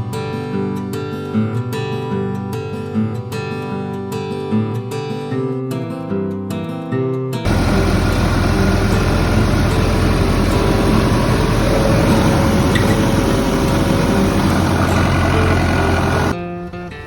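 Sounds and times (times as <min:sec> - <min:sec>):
engine rumbling: 0:07.5 - 0:16.4.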